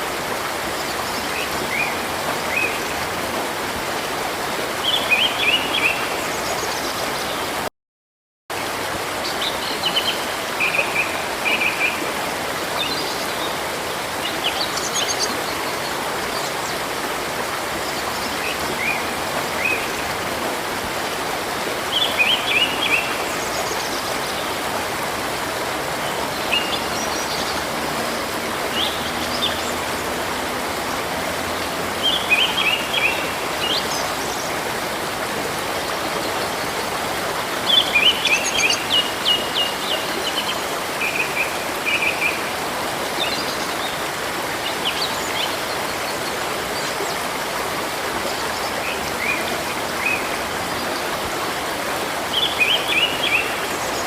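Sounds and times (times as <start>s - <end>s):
stream rushing: 0.0s - 7.7s, 8.5s - 54.0s.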